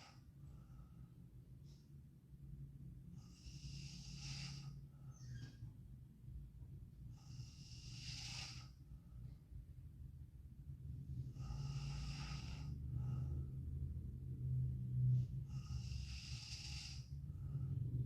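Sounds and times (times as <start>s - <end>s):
girl snoring and breathing: 0.0s - 0.2s, 3.2s - 5.0s, 7.1s - 8.9s, 11.1s - 14.0s, 15.1s - 17.8s
low steady drone: 0.0s - 18.0s.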